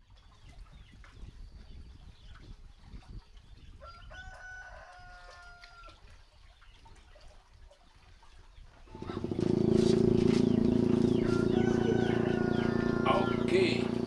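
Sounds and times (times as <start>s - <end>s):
rooster crowing: 3.8s - 5.9s, 10.9s - 14.0s.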